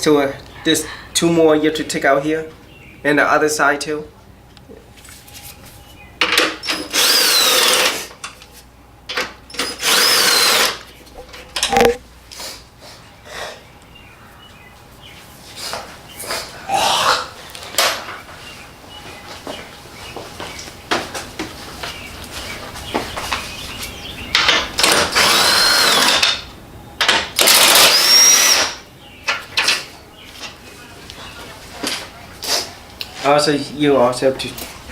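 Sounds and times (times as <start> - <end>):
power drill running: 6.6 - 8.1, 9.5 - 10.8, 24.8 - 26.4, 27.4 - 28.8.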